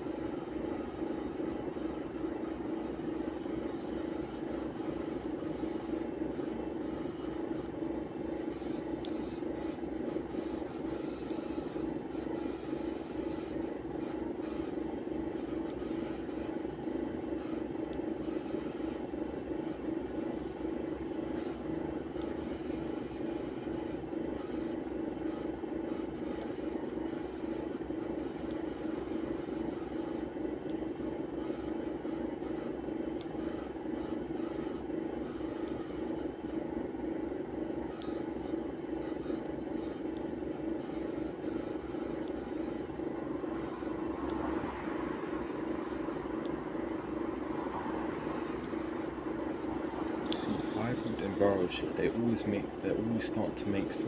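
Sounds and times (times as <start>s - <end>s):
bus whirring drone: 42.2s - 53.2s.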